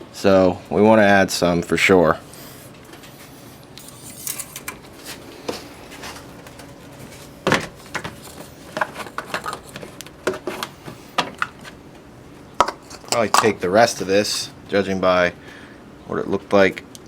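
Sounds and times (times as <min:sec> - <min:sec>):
hands handling engine parts: 0:02.8 - 0:14.5.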